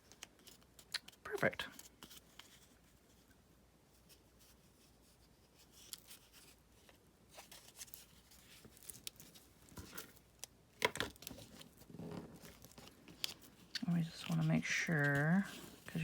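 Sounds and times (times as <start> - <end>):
paper rustling and crinkling: 4.0 - 16.0.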